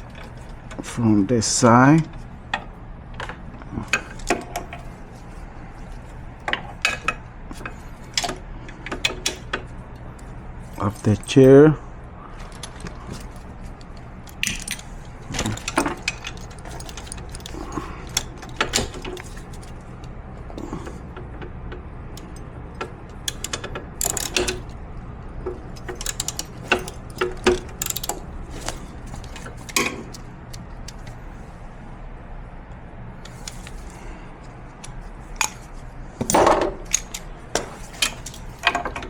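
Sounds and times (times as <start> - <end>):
steady low hum: 0.0 - 39.0
metal tool clicks and clinks: 25.8 - 30.2, 36.2 - 39.0.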